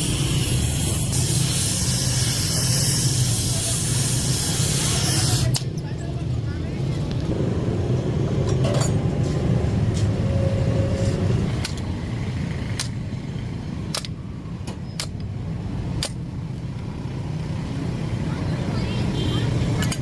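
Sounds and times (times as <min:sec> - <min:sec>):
road traffic rumble: 0:00.0 - 0:20.0
metallic tool clicks: 0:13.9 - 0:14.2, 0:16.0 - 0:16.2.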